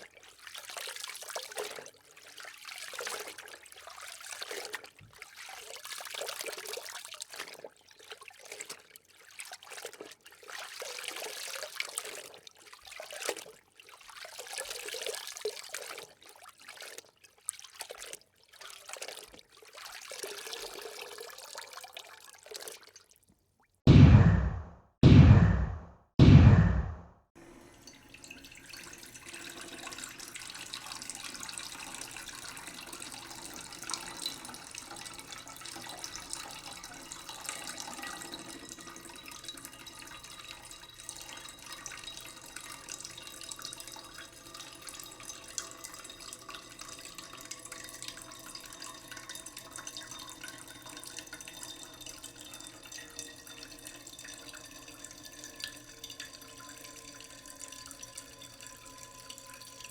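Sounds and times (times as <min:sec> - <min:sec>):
water drips and splashes: 0:00.0 - 0:23.8, 0:27.6 - 0:59.9
tap water running into sink: 0:27.6 - 0:59.9.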